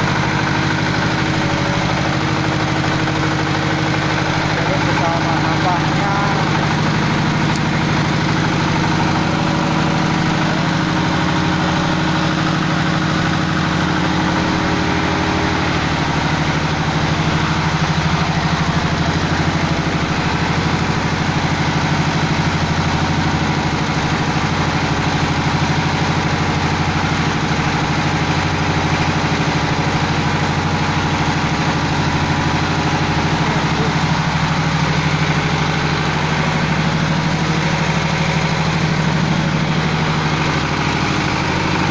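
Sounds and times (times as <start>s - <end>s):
machine mechanical hum: 0.0s - 41.9s.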